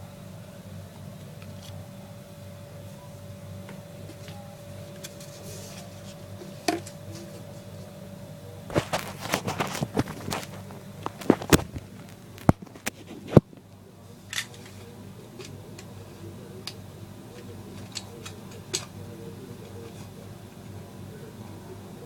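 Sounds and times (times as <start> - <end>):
hands unwrapping packaging: 8.7 - 13.4.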